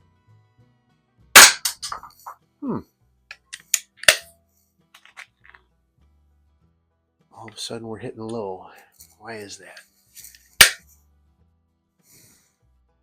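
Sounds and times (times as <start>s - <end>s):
air pistol shot crack: 1.4s - 1.8s, 10.6s - 10.8s
pellet striking target clicks: 10.6s - 10.8s.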